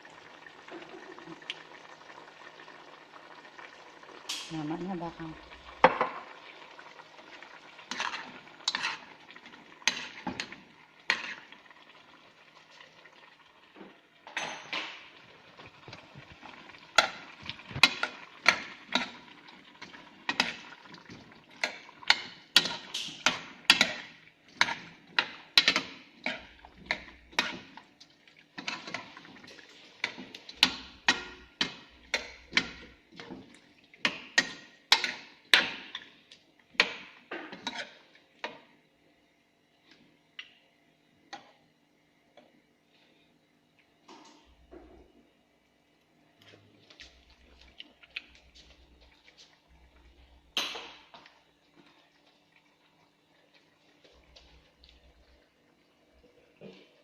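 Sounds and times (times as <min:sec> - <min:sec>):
utensil scraping cooking pot: 0:07.8 - 0:11.6, 0:15.8 - 0:27.8, 0:28.6 - 0:33.4, 0:36.8 - 0:38.0.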